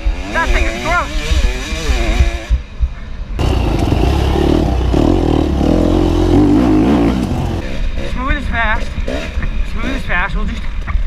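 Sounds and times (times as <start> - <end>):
dirt bike engine revving: 0.0 - 2.7, 3.4 - 8.2, 8.8 - 9.9.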